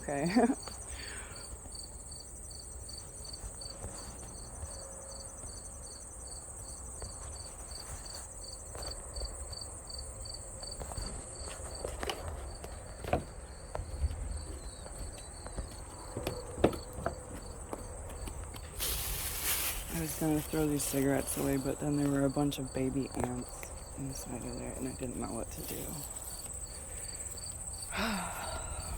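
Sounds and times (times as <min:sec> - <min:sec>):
cricket chirping: 0:00.0 - 0:28.9
insects trilling: 0:00.0 - 0:28.9
low wind rumble: 0:12.3 - 0:28.9.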